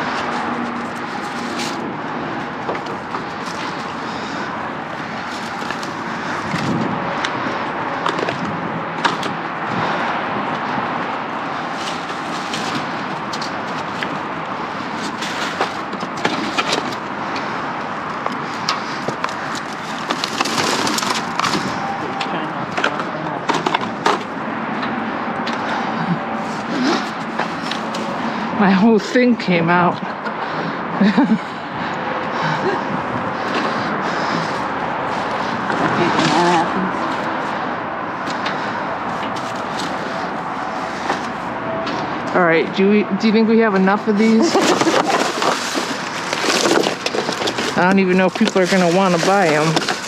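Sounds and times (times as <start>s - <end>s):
objects knocking and clattering: 0.0s - 25.6s, 44.2s - 50.0s
outdoor background noise: 0.0s - 50.0s
steady background noise: 0.0s - 50.0s.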